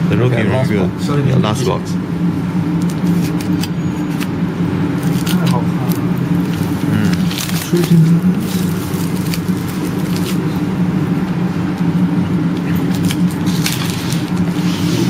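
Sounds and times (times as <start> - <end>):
steady low hum: 0.0 - 15.0
card packaging rustling: 5.0 - 10.8, 12.7 - 15.0.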